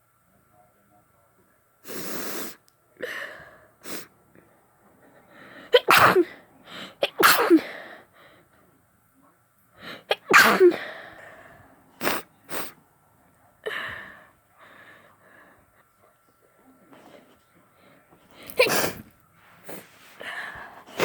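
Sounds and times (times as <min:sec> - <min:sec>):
woman sneezing: 0:05.7 - 0:06.4, 0:07.0 - 0:07.8, 0:10.0 - 0:10.9, 0:18.5 - 0:19.0.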